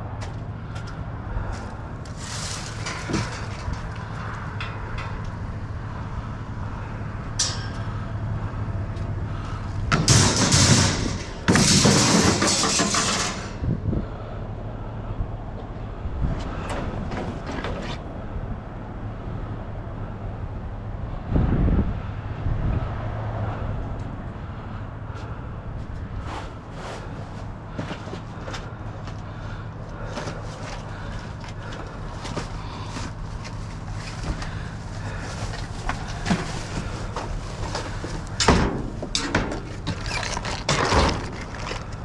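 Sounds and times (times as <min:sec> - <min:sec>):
vehicle engine humming: 0:00.0 - 0:42.0.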